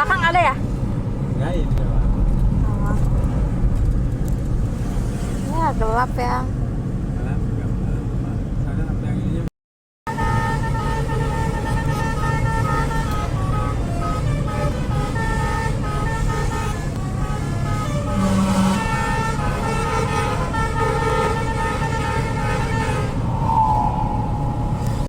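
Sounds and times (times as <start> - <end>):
bus engine rumble: 0.0 - 9.5, 10.1 - 25.0
bus horn playing a tune: 10.1 - 23.3.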